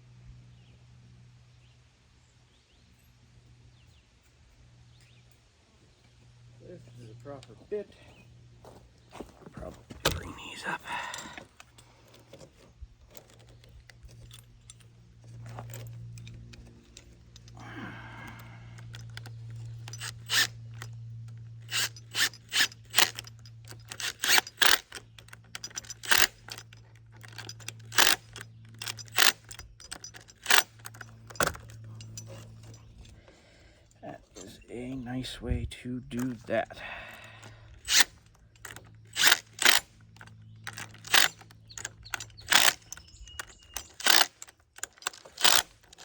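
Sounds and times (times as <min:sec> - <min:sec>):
steady low hum: 0:04.4 - 0:46.0
steel hardware clinking: 0:09.9 - 0:35.2, 0:36.0 - 0:46.0.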